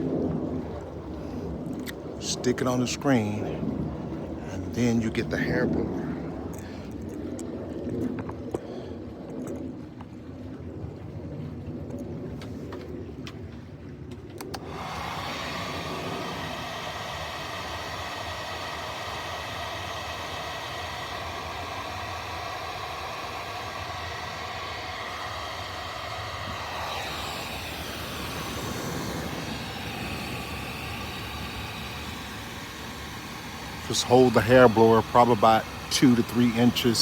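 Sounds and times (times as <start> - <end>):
hair dryer running: 14.4 - 37.0.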